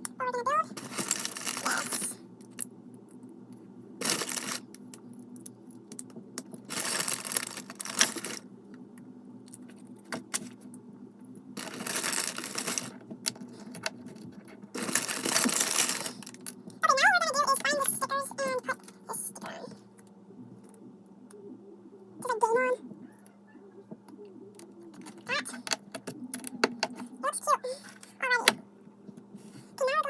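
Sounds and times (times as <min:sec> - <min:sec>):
plastic toy bricks rattling: 0:00.8 - 0:02.2, 0:04.0 - 0:04.6, 0:06.7 - 0:08.4, 0:11.6 - 0:13.0, 0:14.8 - 0:16.3.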